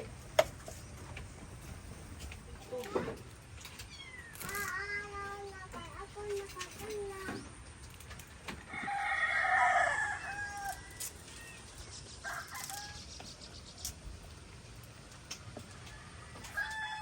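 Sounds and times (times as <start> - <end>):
rooster crowing: 8.7 - 11.6, 12.2 - 13.2, 15.6 - 17.0.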